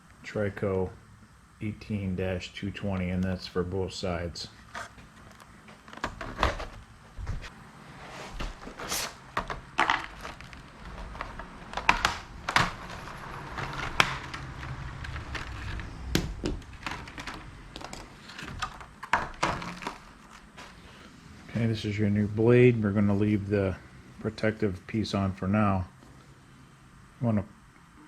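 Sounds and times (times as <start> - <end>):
plastic packaging clicks and rustles: 8.4 - 20.9.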